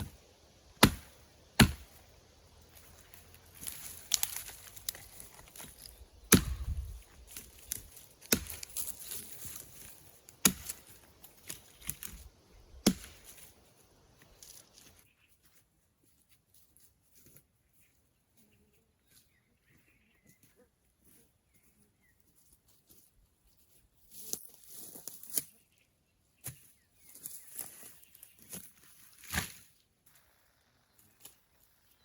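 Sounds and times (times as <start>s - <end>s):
wood chopping blows: 0.8s - 2.0s, 6.2s - 7.0s
rustling: 1.9s - 12.3s.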